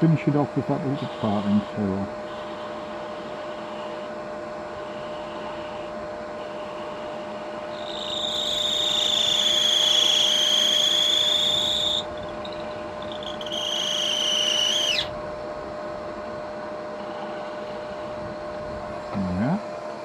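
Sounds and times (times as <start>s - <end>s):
wood lathe humming: 1.0s - 15.1s
high whistling squeal of cutting: 4.8s - 15.2s.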